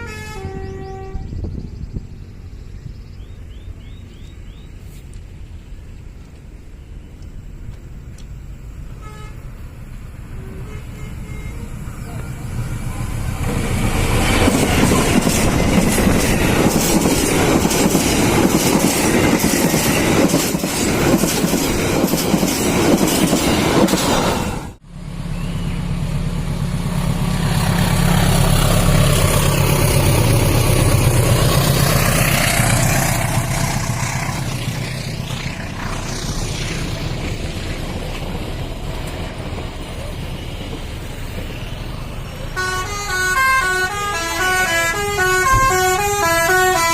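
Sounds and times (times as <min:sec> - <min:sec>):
train wheels clattering over rails: 0:13.4 - 0:24.4.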